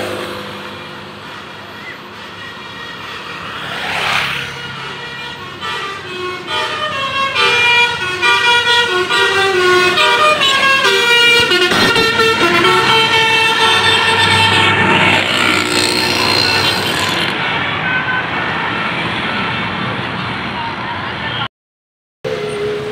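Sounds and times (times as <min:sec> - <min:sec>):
bus musical horn playing tune: 0:04.4 - 0:17.3.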